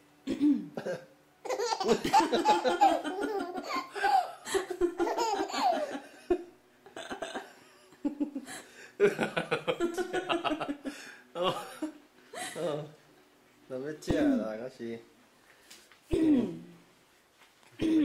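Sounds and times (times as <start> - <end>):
baby laughing: 1.4 - 6.4.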